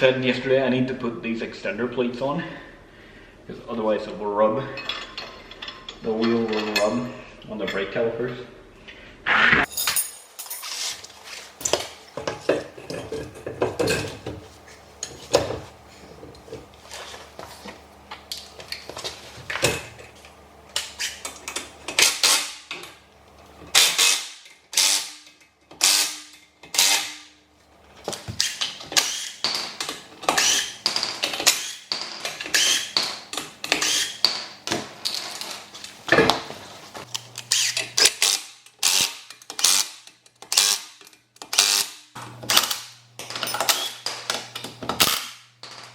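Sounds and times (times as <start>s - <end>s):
metal tools clinking: 4.8s - 7.8s, 9.7s - 11.0s, 43.2s - 44.7s.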